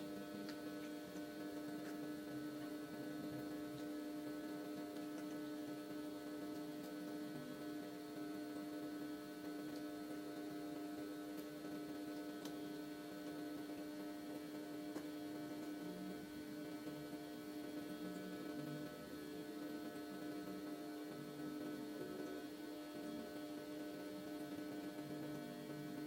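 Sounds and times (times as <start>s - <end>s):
electrical hum: 0.0s - 26.0s.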